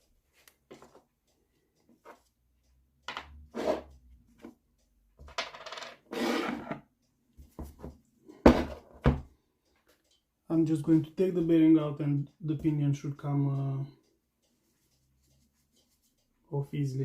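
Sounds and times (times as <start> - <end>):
metal scraping: 6.1 - 6.8.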